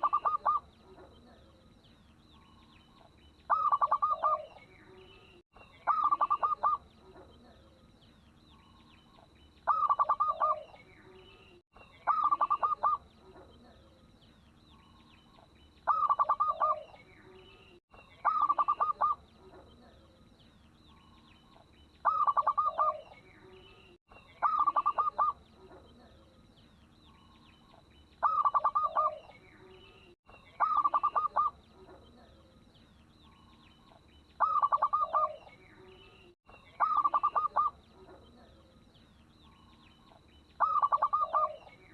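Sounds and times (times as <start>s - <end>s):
dove cooing: 0.0s - 1.5s, 3.5s - 4.6s, 5.9s - 7.6s, 9.7s - 10.8s, 12.0s - 13.9s, 15.9s - 17.0s, 18.2s - 20.0s, 22.0s - 23.2s, 24.4s - 26.2s, 28.2s - 29.4s, 30.6s - 32.4s, 34.4s - 35.5s, 36.8s - 38.6s, 40.6s - 41.8s.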